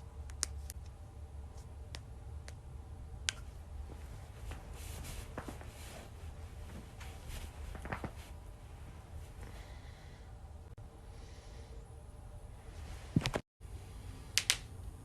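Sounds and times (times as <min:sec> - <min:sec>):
low steady hum: 0:00.0 - 0:15.0
body movement rustle: 0:03.8 - 0:09.8.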